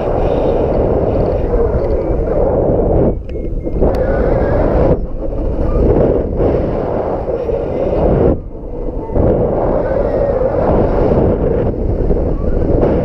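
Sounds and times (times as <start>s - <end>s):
strong wind buffeting microphone: 0.0s - 13.0s.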